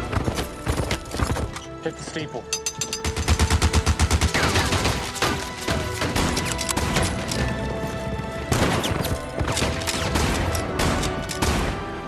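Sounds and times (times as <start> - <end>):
orchestral score: 0.0 - 12.0
gunshots: 3.0 - 7.4, 8.5 - 12.0.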